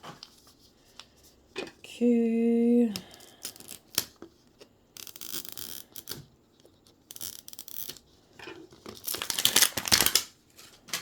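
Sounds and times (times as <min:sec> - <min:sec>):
plastic packaging crinkling: 0:08.8 - 0:11.0.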